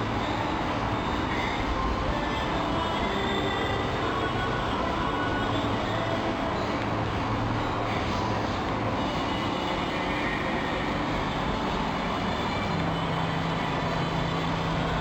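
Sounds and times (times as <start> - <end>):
mechanical hum: 0.0 - 15.0.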